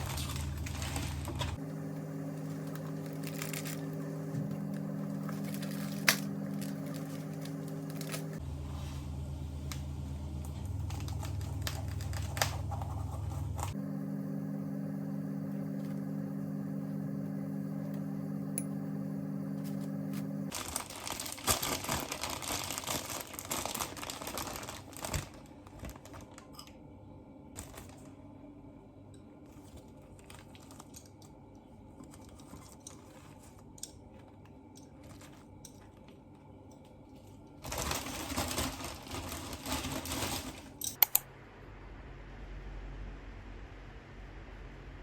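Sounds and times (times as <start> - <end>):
low hum: 0.0 - 20.6.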